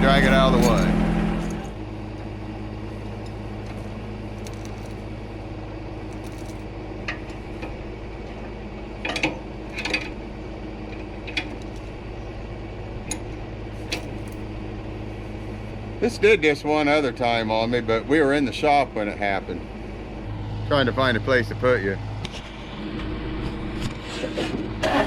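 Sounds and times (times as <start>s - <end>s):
chain clanking: 0.0s - 1.8s, 3.2s - 5.1s, 6.1s - 7.3s, 9.1s - 10.2s, 11.3s - 12.0s, 13.1s - 14.5s
engine idling: 0.0s - 25.0s.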